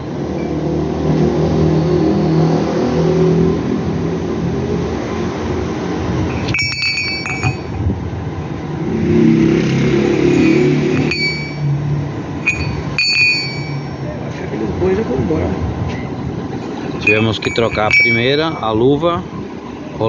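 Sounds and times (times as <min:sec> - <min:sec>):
metal parts clinking: 0:06.2 - 0:07.8, 0:10.2 - 0:11.6, 0:12.4 - 0:13.9, 0:16.7 - 0:18.8
motor rumbling: 0:10.0 - 0:13.9.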